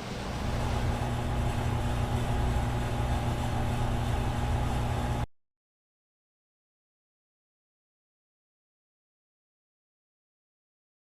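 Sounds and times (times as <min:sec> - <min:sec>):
low machinery hum: 0:00.0 - 0:05.3.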